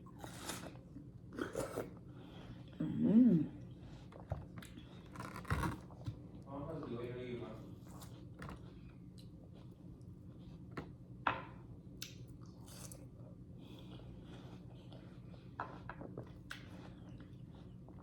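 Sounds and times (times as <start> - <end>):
chewing juicy fruit: 12.0 - 18.0.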